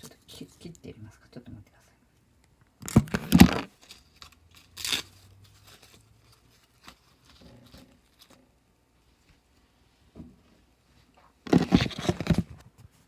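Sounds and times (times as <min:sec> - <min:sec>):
seaweed sheet tearing: 0:03.3 - 0:05.2.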